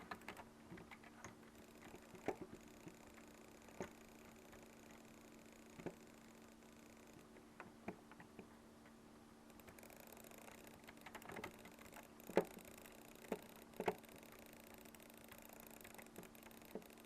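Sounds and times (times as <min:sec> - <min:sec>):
faint low hum: 0:00.0 - 0:17.0
small clicks: 0:00.0 - 0:17.0.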